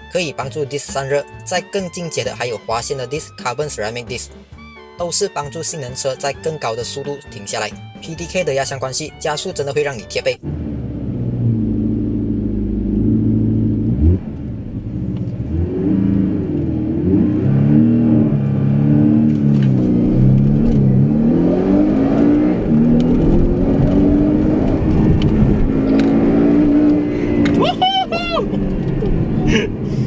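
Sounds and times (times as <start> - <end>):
car engine accelerating: 10.4 - 30.0.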